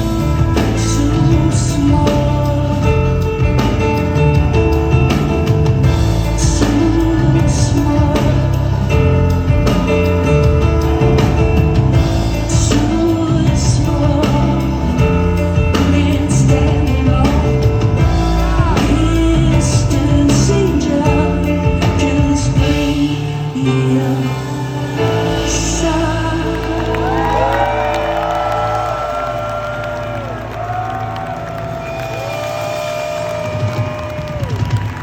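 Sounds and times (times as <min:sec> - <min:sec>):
woman singing: 0:00.0 - 0:04.2, 0:06.2 - 0:10.0, 0:12.3 - 0:28.1
sustained bass notes: 0:00.0 - 0:34.4.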